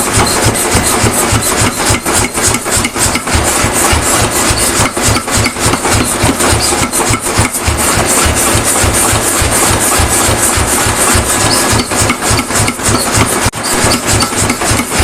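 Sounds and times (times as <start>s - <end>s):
mechanical running noise: 0.0s - 15.0s.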